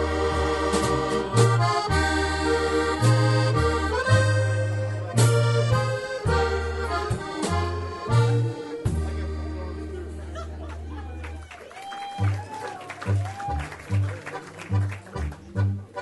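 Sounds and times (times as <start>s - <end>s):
stepping bass line: 0.0s - 10.1s
polka band with accordion: 0.0s - 11.4s, 12.1s - 16.0s.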